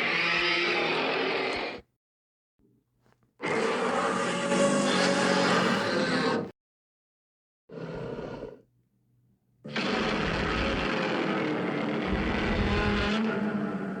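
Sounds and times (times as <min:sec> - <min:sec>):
loud rough monster roar: 0:09.7 - 0:14.0.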